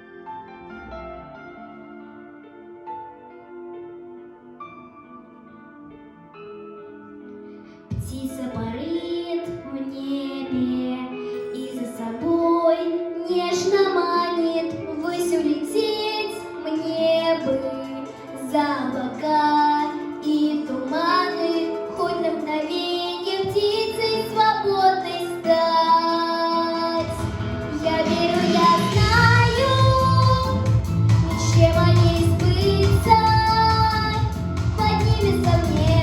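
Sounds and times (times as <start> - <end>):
instrumental backing music: 0.0 - 36.0
girl singing: 8.0 - 36.0
deep bass line: 28.9 - 36.0.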